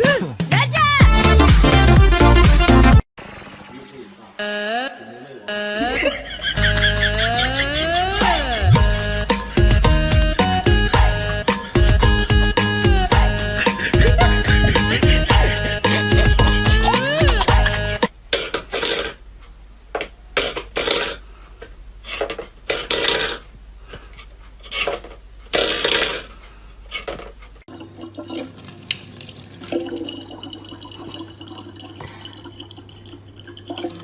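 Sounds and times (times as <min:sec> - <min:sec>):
water splashing and dripping: 0:27.7 - 0:34.0.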